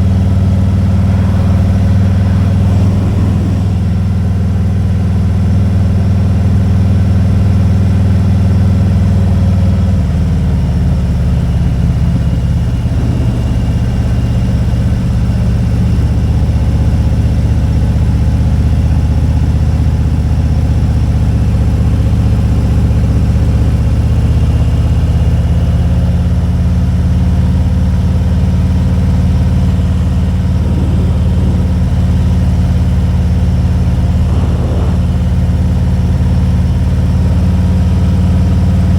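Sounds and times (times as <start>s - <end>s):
motorcycle engine running: 0.0s - 38.9s.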